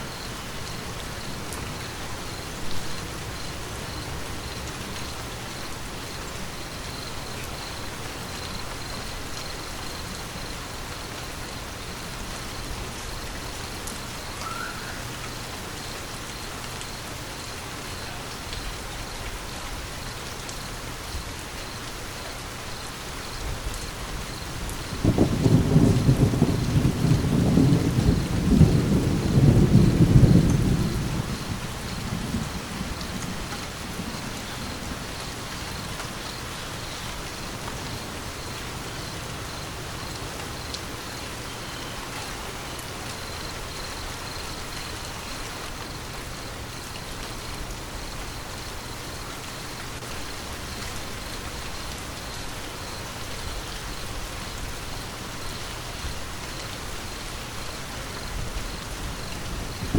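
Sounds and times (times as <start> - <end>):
steady rain: 0.0 - 59.9
thunder rumble: 24.4 - 40.0, 57.6 - 59.9.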